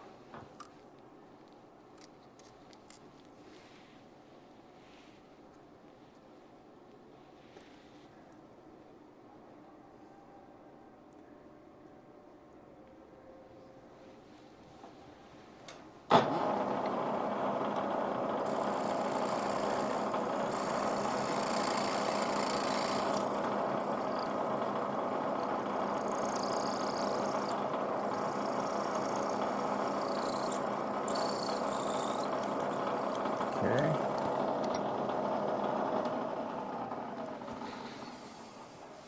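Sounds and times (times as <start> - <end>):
machine motor whirring: 16.2 - 39.0
high hiss: 18.5 - 24.8, 25.4 - 34.0.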